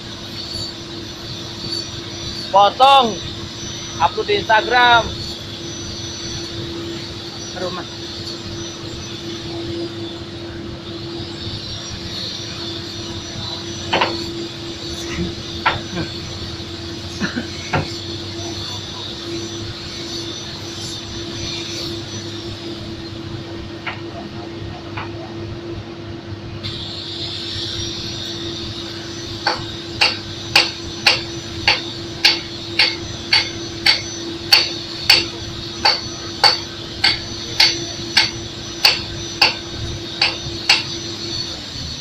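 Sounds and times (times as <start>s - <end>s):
steady engine hum: 0.0s - 42.0s
hammer blows: 26.7s - 41.6s.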